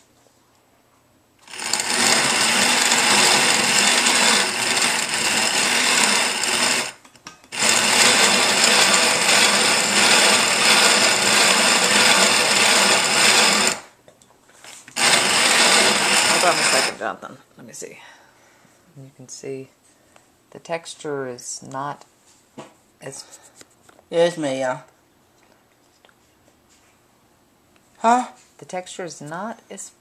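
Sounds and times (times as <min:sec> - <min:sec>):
hand mill grinding grain: 0:01.4 - 0:13.9, 0:14.9 - 0:17.0.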